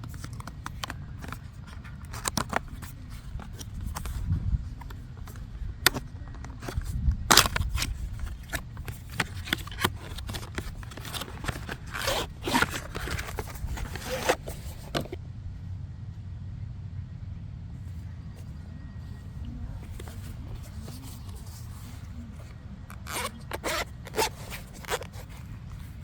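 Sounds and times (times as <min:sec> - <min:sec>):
packaging scrapes and rustles: 0:00.0 - 0:04.2, 0:04.8 - 0:15.2, 0:19.8 - 0:26.0
low rumble: 0:10.8 - 0:23.0.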